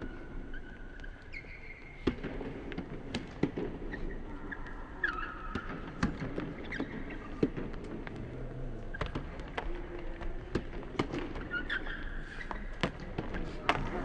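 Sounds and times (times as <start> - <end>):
shoe squeaks on floor: 0.0 - 2.6, 11.4 - 12.8.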